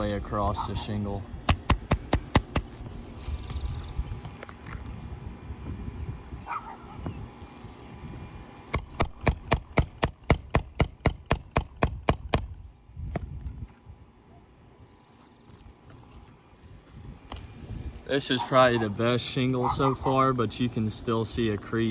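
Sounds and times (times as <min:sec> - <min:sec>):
hammer striking metal: 0:08.8 - 0:12.5.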